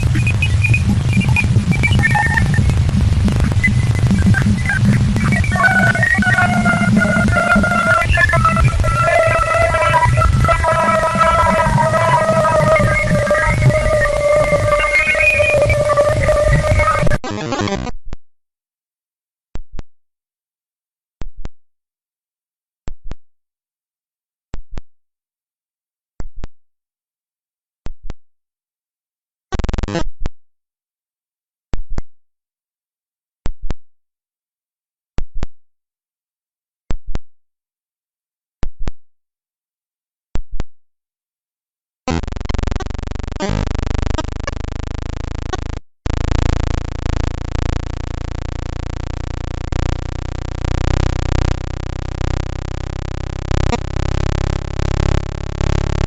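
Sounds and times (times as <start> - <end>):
short synthesized notes: 0.0 - 17.2
layered synthesizer chord: 5.6 - 17.0.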